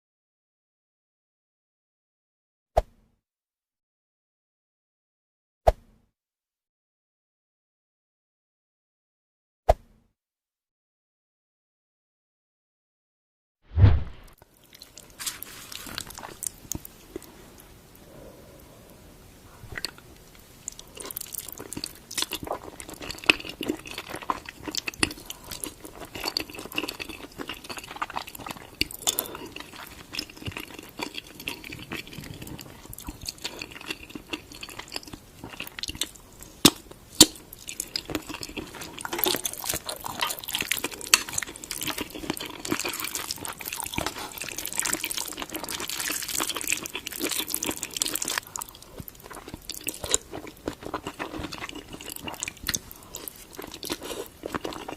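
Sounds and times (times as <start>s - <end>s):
wet chewing and smacking: 14.6s - 17.4s, 19.7s - 54.9s.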